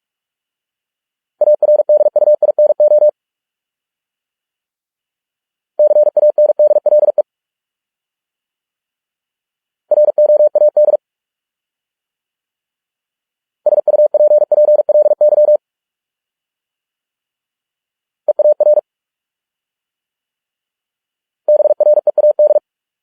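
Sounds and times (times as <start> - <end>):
morse code beeps: 1.4 - 3.1, 5.8 - 7.2, 13.7 - 15.6, 21.5 - 22.6.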